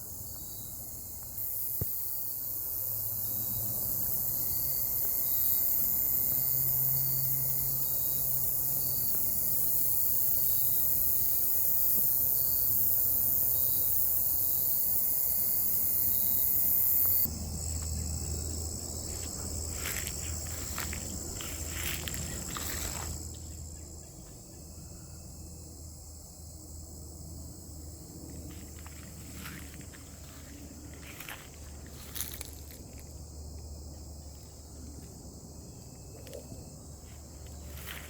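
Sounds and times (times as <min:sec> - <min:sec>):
crickets chirping: 0:00.0 - 0:38.0
rustling or crunching footsteps: 0:17.0 - 0:23.5, 0:28.4 - 0:33.2, 0:37.0 - 0:38.0.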